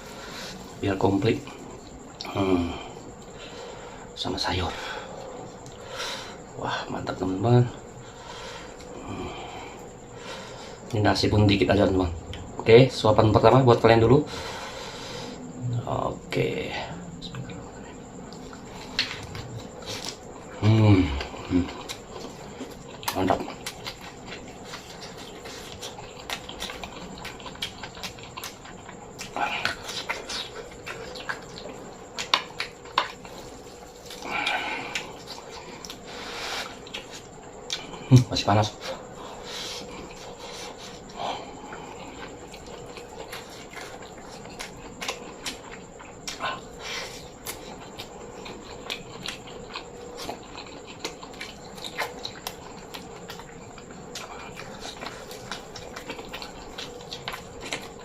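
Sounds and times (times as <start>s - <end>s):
person chewing food: 7.8s - 11.0s, 17.3s - 58.0s.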